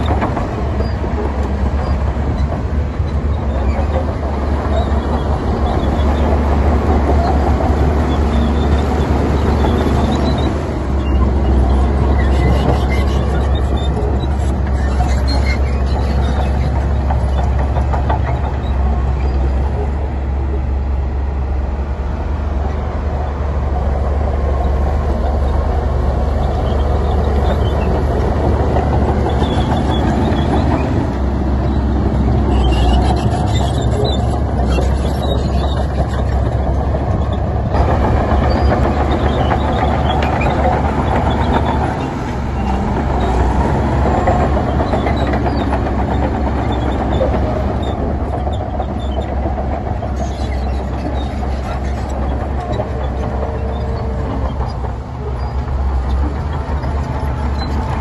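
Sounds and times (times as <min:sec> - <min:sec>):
metallic clanks and squeaks: 0:00.0 - 0:20.7, 0:22.6 - 0:58.0
diesel machinery engine drone: 0:00.0 - 0:58.0.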